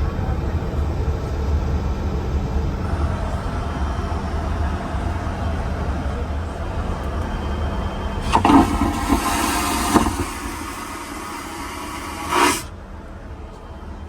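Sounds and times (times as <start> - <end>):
airliner cabin drone: 0.0 - 14.0
loud hiss: 7.4 - 12.7.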